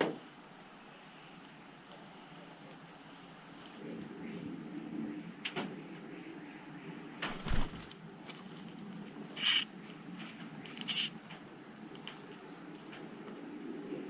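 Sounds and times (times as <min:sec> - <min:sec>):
bird wing flutter: 0:07.2 - 0:11.4.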